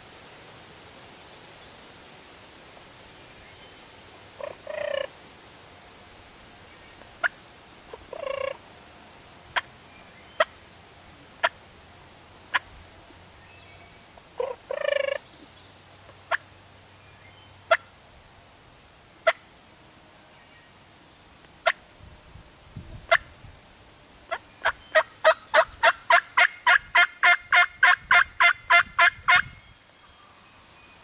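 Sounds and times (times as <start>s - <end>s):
turkey clucks: 4.4s - 5.2s, 7.2s - 8.6s, 14.4s - 15.2s, 24.3s - 29.5s
turkey gobbling: 4.4s - 5.2s, 7.2s - 8.6s, 14.4s - 15.2s, 24.3s - 29.5s.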